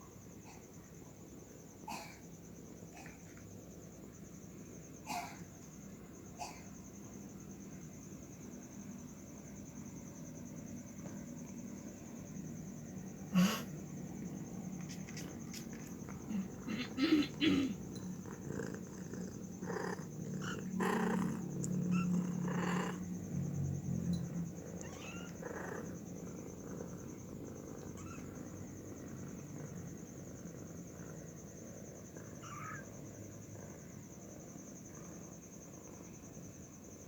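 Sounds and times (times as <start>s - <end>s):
cat low rumble: 10.2s - 37.0s.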